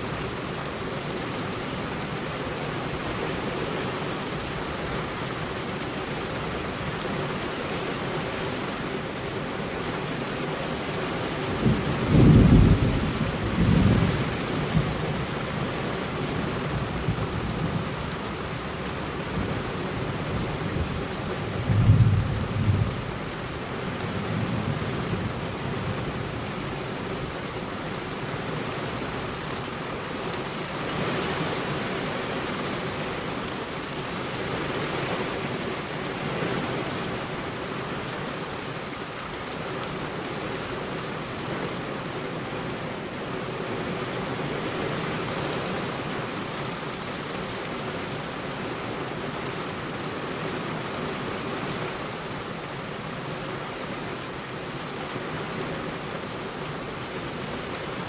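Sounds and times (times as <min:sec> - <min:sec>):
heavy rain on road: 0:00.0 - 0:58.0.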